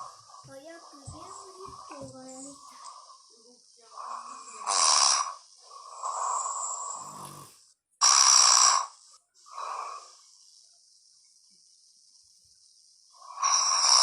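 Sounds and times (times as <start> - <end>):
man snoring: 0.0 - 10.3, 13.1 - 14.0.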